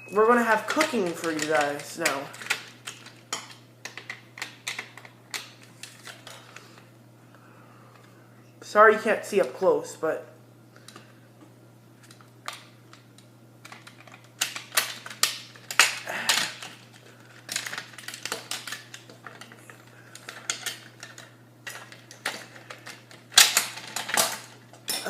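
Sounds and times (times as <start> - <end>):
plastic parts clicking and snapping: 3.8 - 6.3, 12.0 - 19.6, 20.2 - 24.6.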